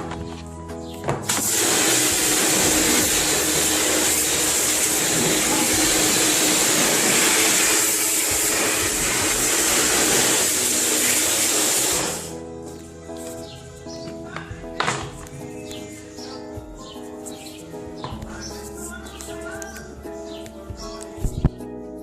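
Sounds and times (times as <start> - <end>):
hiss of high-pressure jet: 1.3 - 12.4.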